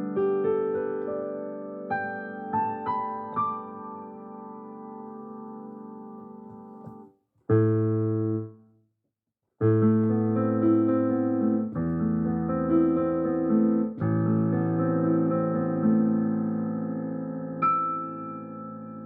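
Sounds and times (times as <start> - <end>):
sustained piano chords: 9.6 - 19.0.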